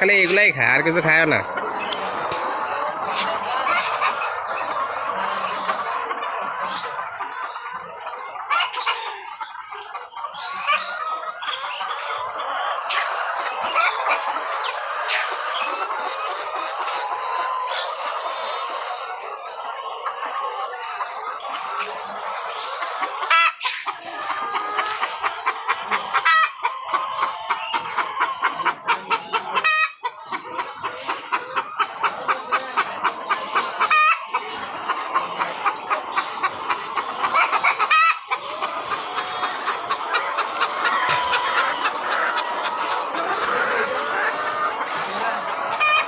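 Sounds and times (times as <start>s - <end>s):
drawn-out hen calls: 0.0s - 46.0s
hens clucking: 0.0s - 46.0s.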